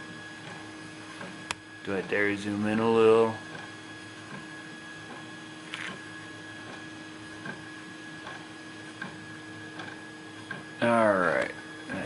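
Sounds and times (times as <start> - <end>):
electrical hum: 0.0 - 12.0.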